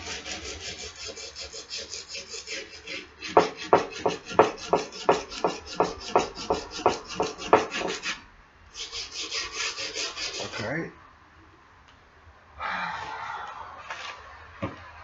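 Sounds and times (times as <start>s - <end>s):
sandpaper scrubbing steel: 0.0s - 10.7s.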